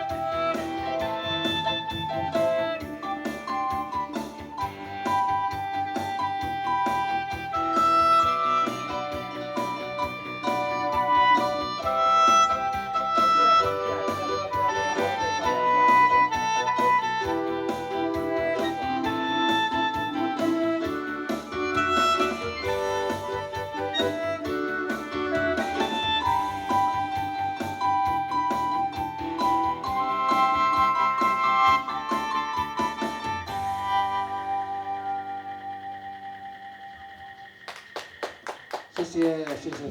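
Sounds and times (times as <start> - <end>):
melody of held notes: 0.0 - 37.6
instrumental music: 0.0 - 38.0
keyboard accompaniment: 0.0 - 39.9.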